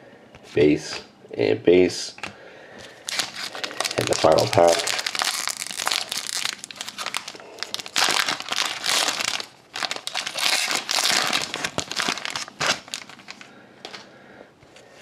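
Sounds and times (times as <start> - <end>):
card pack wrapper tearing: 3.0 - 14.0.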